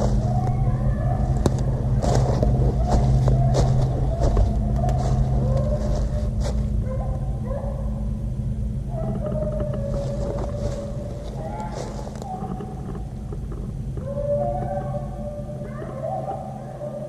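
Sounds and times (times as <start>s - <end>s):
brush snapping and crackling: 0.0s - 6.8s, 9.2s - 14.7s
hounds baying: 0.0s - 17.0s
steady low drone: 0.0s - 17.0s.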